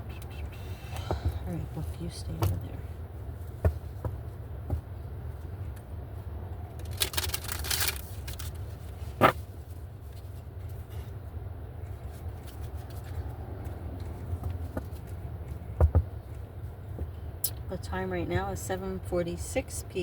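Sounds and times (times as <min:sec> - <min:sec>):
steady low hum: 0:00.0 - 0:20.0
cards rustling: 0:06.8 - 0:09.2.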